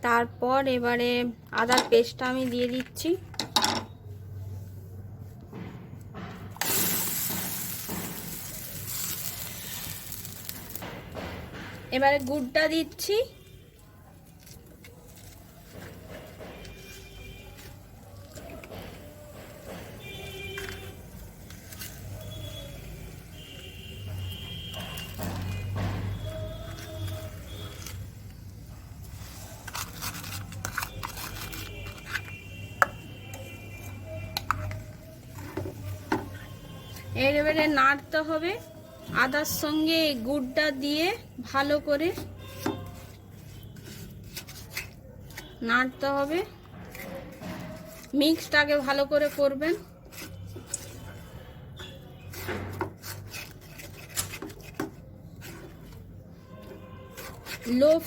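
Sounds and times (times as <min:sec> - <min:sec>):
utensil scraping thick mixture in pan: 0:06.6 - 0:10.8, 0:13.6 - 0:58.0
spoon scraping a cooking pan: 0:41.7 - 0:45.6, 0:46.8 - 0:58.0.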